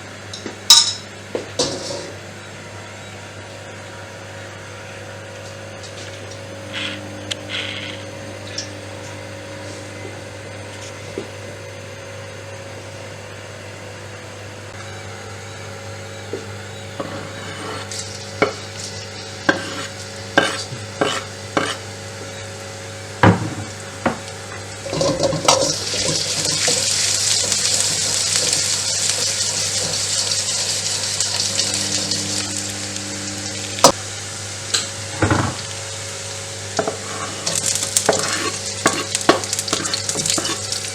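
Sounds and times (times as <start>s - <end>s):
food sizzling in hot oil: 17.0s - 22.0s, 23.4s - 34.8s, 35.4s - 40.9s
utensil knocking and scraping pan: 19.4s - 21.8s, 36.8s - 40.7s.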